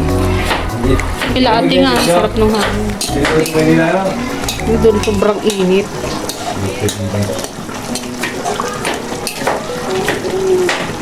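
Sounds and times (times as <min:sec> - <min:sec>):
stew bubbling in a pot: 0:00.0 - 0:11.0
metal spoon clinking on pan: 0:02.0 - 0:10.2.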